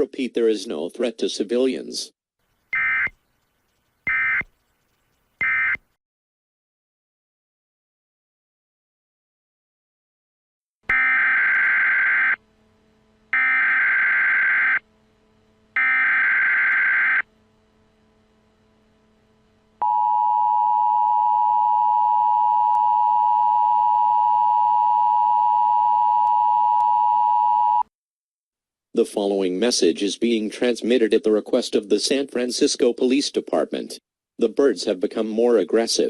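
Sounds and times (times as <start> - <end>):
digital header data bursts: 2.7 - 4.5
two-tone alert signal: 2.8 - 3.2.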